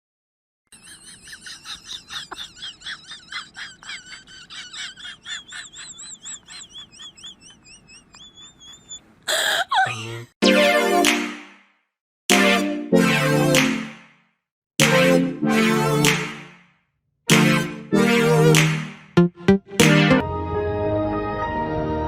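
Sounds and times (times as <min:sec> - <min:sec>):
small bird chirping and trilling: 0:05.9 - 0:09.0.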